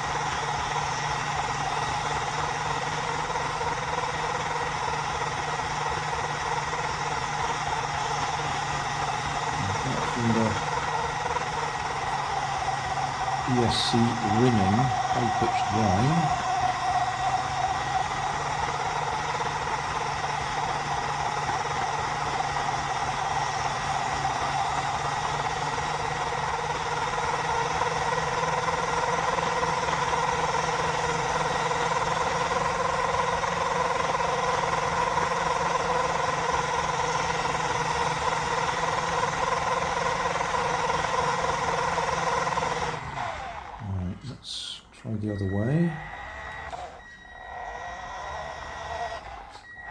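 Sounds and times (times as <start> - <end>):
toy car electric motor running: 0.0 - 44.1, 45.5 - 49.9
high-pitched electronic whine: 7.7 - 26.4, 43.6 - 49.9.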